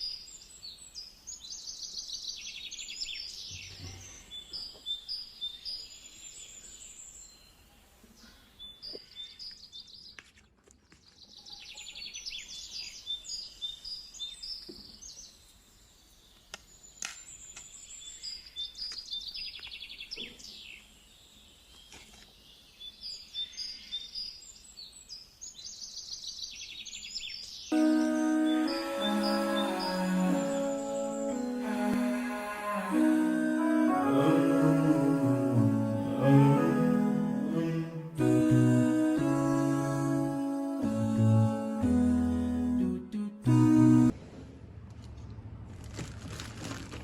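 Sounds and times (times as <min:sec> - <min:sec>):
small birds chirping: 0:00.0 - 0:31.9.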